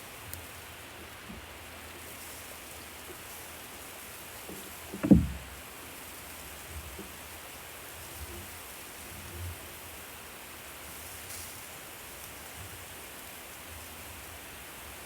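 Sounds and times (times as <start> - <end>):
loud low thump: 5.0 - 5.6.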